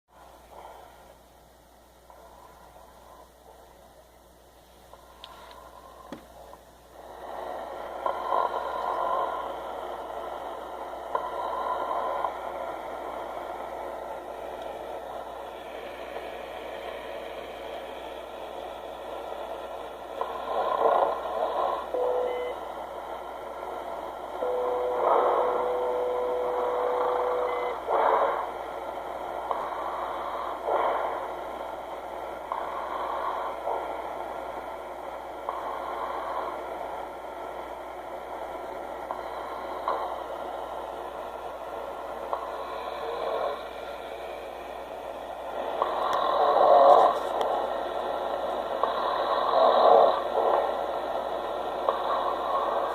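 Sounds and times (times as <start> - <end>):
man snoring: 7.0 - 9.8, 11.1 - 12.4, 20.2 - 22.0, 45.6 - 47.6, 48.8 - 50.7
whistling snore: 20.2 - 22.6, 24.4 - 28.5, 48.8 - 50.8.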